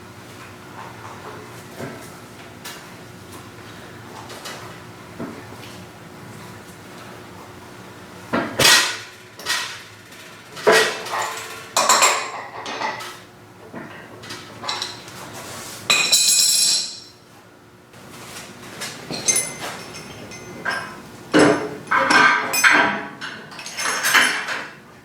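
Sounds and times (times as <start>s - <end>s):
metal tools knocking and clinking: 19.1s - 24.7s.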